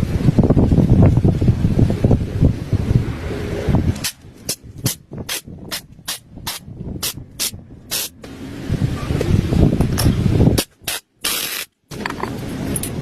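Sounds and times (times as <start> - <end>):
low rumbling noise: 0.0 - 10.6
short hissing spray bursts: 6.1 - 8.2.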